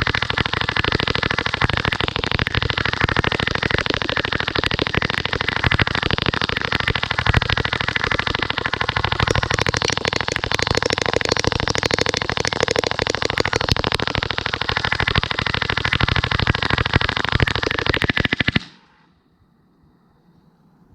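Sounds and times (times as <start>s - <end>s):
bb gun firing rapid burst: 0.0s - 19.1s.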